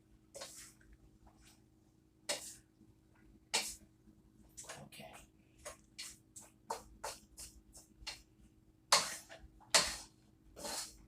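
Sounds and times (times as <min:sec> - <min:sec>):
utensil scraping pan stirring vegetables: 0:00.3 - 0:00.8, 0:02.2 - 0:02.7, 0:03.5 - 0:03.8, 0:05.6 - 0:08.3, 0:08.9 - 0:11.0.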